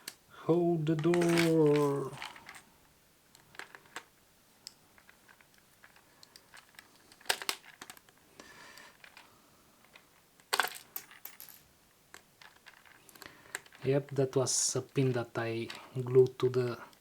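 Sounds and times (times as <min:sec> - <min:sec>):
plastic toy parts clicking: 0:03.3 - 0:08.1.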